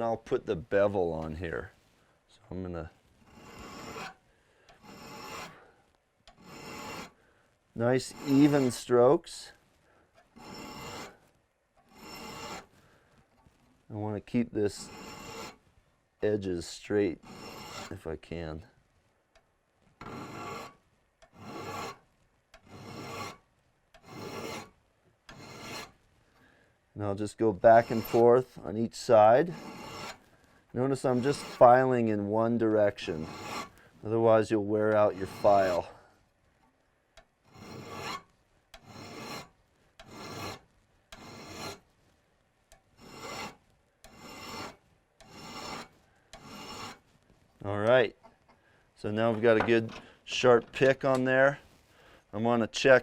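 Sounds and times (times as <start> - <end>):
file rasping on steel: 3.3 - 4.2, 4.8 - 5.7, 6.3 - 7.2, 8.0 - 8.9, 10.4 - 11.2, 11.8 - 12.8, 14.7 - 15.6, 17.2 - 18.1, 20.0 - 22.0, 22.6 - 23.4, 24.0 - 26.0, 27.6 - 28.4, 29.3 - 30.3, 31.0 - 32.0, 32.6 - 33.8, 34.8 - 35.9, 37.4 - 41.8, 43.0 - 47.0
file clicking on metal: 3.4 - 5.6, 6.3 - 7.2, 8.0 - 8.9, 10.2 - 11.2, 11.8 - 12.7, 14.8 - 15.6, 17.2 - 18.0, 19.4 - 22.0, 22.6 - 23.4, 24.0 - 24.7, 25.3 - 25.9, 27.6 - 28.3, 29.5 - 30.2, 31.0 - 31.8, 33.0 - 33.8, 34.9 - 35.8, 37.2 - 41.8, 42.7 - 47.0.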